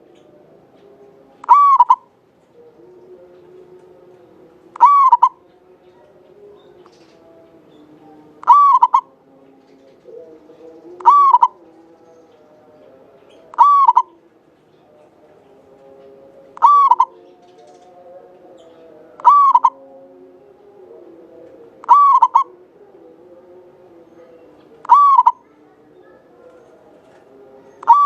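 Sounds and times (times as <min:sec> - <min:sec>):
dove cooing: 0:01.4 - 0:02.1, 0:04.7 - 0:06.1, 0:08.4 - 0:09.2, 0:10.0 - 0:11.7, 0:13.5 - 0:14.2, 0:16.6 - 0:17.9, 0:18.6 - 0:23.6, 0:24.2 - 0:28.0
softer lower bird calls: 0:01.4 - 0:02.1, 0:04.8 - 0:05.5, 0:08.4 - 0:09.1, 0:11.0 - 0:11.6, 0:13.3 - 0:14.2, 0:16.6 - 0:17.3, 0:18.6 - 0:19.8, 0:21.8 - 0:22.6, 0:24.8 - 0:26.7, 0:27.6 - 0:28.0.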